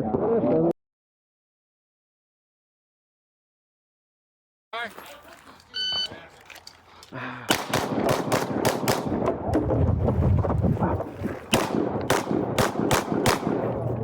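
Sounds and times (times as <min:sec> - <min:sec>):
pistol shots: 0:07.5 - 0:09.4, 0:11.5 - 0:13.8.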